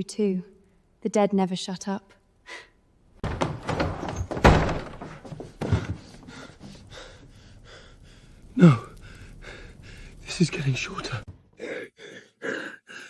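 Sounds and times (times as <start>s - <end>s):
heavy thuds and knocks: 3.2s - 7.4s.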